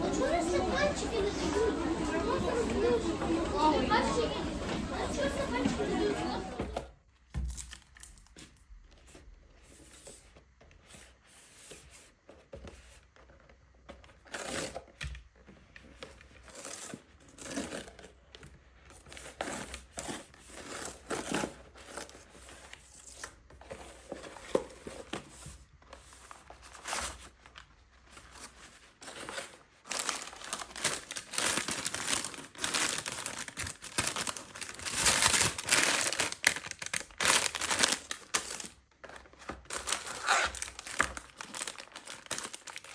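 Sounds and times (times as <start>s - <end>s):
packaging crinkling and tearing: 29.0s - 42.9s.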